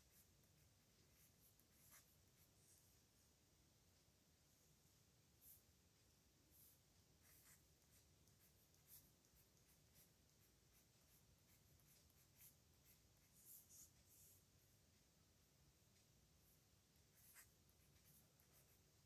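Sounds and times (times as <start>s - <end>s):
pen nib scratching on paper: 0.0s - 2.5s, 6.5s - 14.4s, 17.1s - 19.0s.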